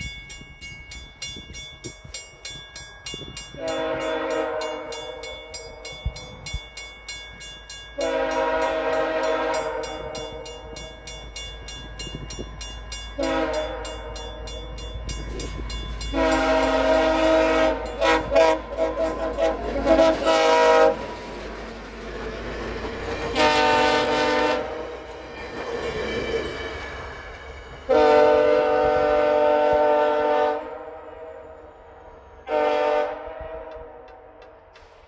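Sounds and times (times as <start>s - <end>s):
train rumble: 0.0s - 35.0s
train air horn blasts: 3.6s - 5.3s, 8.0s - 10.8s, 13.2s - 14.3s, 16.1s - 21.1s, 23.3s - 24.9s, 27.9s - 34.8s.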